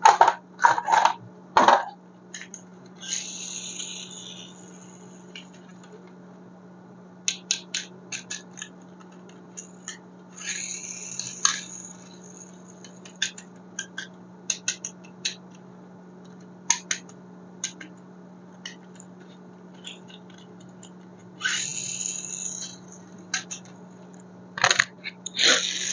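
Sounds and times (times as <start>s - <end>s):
steady low hum: 0.0s - 25.9s
plastic toys clicking and tapping: 7.3s - 15.6s, 16.2s - 18.0s, 18.6s - 25.9s.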